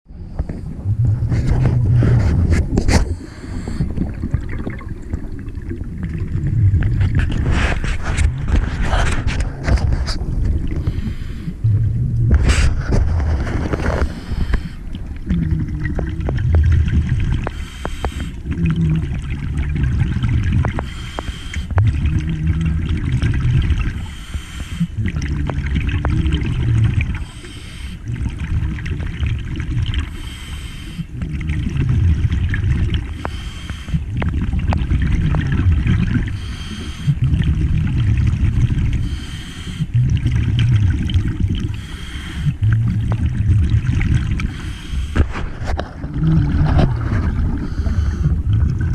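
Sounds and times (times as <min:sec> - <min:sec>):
exhaled bubbles rushing: 0:00.1 - 0:48.9
regulator inhale hiss: 0:03.1 - 0:04.0, 0:10.8 - 0:11.6, 0:14.0 - 0:14.9, 0:17.5 - 0:18.4, 0:20.8 - 0:21.7, 0:24.0 - 0:24.9, 0:27.2 - 0:28.0, 0:30.1 - 0:31.1, 0:33.2 - 0:34.0, 0:36.3 - 0:37.2, 0:39.0 - 0:39.9, 0:41.7 - 0:42.6, 0:44.5 - 0:45.3.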